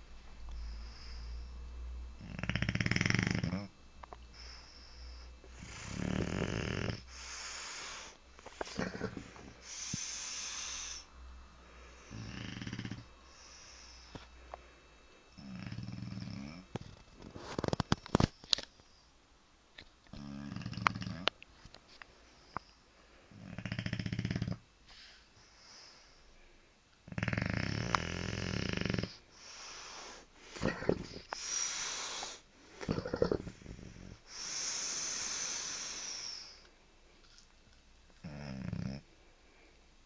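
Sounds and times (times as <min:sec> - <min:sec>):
pet snoring: 0:02.2 - 0:03.7, 0:04.4 - 0:11.1, 0:11.9 - 0:14.2, 0:15.3 - 0:17.8, 0:20.1 - 0:21.3, 0:23.3 - 0:24.6, 0:27.0 - 0:36.7, 0:38.2 - 0:39.1.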